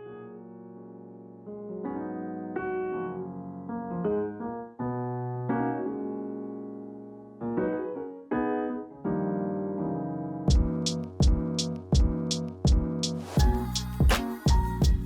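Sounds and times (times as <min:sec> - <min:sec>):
piano chords: 0:00.0 - 0:15.0
drum and cymbal hits: 0:10.5 - 0:15.0.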